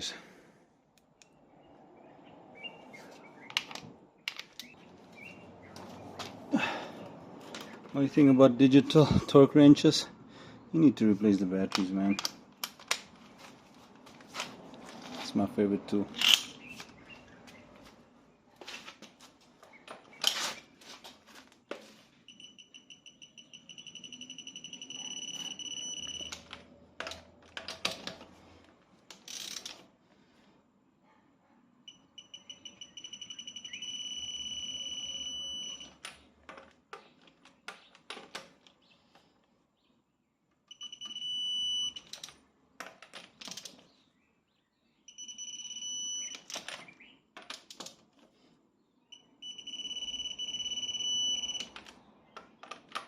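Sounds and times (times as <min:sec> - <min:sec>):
torque wrench beeping: 0:22.3 - 0:26.4, 0:31.9 - 0:35.9, 0:40.7 - 0:42.1, 0:45.1 - 0:46.5, 0:49.1 - 0:51.8.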